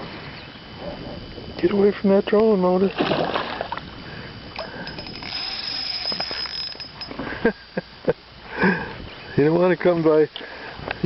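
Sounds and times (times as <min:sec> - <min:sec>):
thin high whine: 0:00.0 - 0:11.0.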